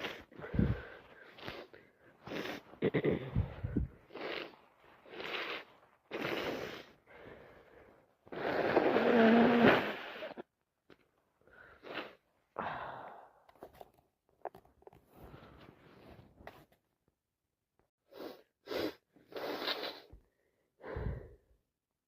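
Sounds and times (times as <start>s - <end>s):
sharp breaths and sniffs: 0.0s - 2.8s, 3.4s - 9.2s, 18.1s - 20.2s.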